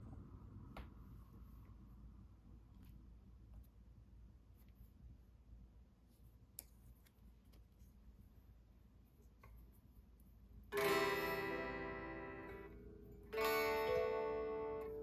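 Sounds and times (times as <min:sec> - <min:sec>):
plucked string chord ringing: 0:10.8 - 0:15.0.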